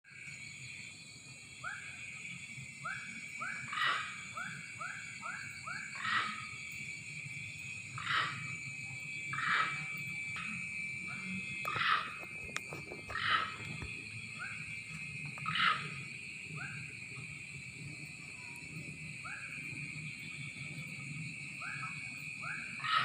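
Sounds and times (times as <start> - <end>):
animal harsh calls: 5.3 - 6.6, 8.0 - 8.6, 9.3 - 10.5, 11.2 - 13.8, 15.4 - 16.8, 21.6 - 23.0.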